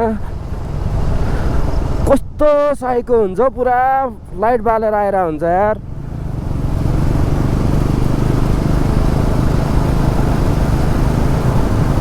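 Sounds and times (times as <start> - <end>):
motorcycle engine running: 5.8 - 12.0.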